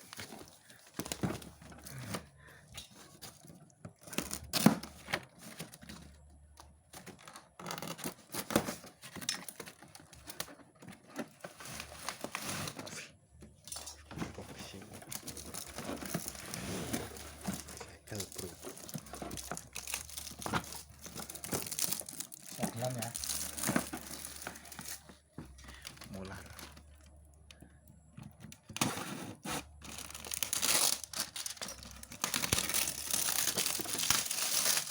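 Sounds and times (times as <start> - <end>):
packaging tearing and crinkling: 3.1 - 13.0, 14.7 - 25.1, 28.6 - 34.9.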